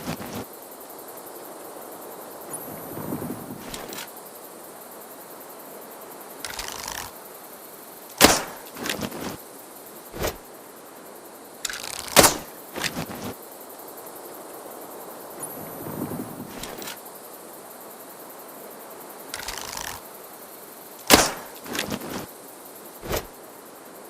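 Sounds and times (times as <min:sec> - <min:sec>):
rustle before bow shot: 0:00.0 - 0:00.5, 0:02.4 - 0:04.2, 0:06.4 - 0:07.3, 0:08.1 - 0:10.6, 0:11.6 - 0:13.4, 0:15.4 - 0:17.0, 0:19.3 - 0:20.1, 0:21.0 - 0:22.4, 0:23.0 - 0:23.4
bow shot snapping: 0:06.5 - 0:07.1, 0:08.2 - 0:09.3, 0:11.6 - 0:13.3, 0:19.4 - 0:20.0, 0:21.1 - 0:22.3
sharp click: 0:21.1 - 0:22.0.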